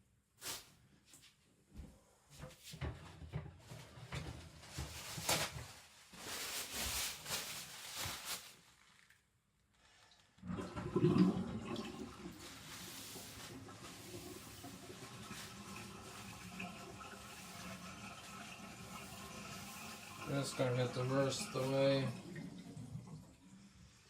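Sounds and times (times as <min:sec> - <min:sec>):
water splashing at a sink: 0:10.0 - 0:23.8.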